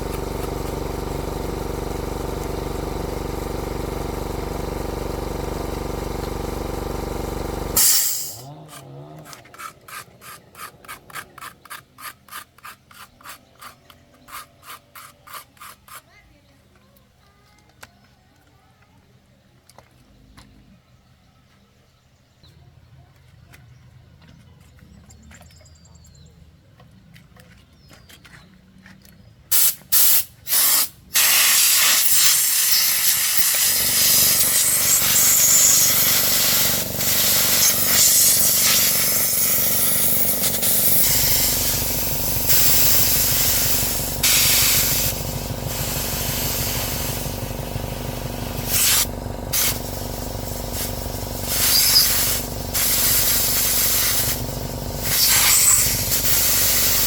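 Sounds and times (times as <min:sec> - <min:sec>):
motor hum: 0:00.0 - 0:11.7, 0:31.9 - 0:57.0
pressurised spray hissing: 0:05.3 - 0:11.3, 0:29.5 - 0:57.0.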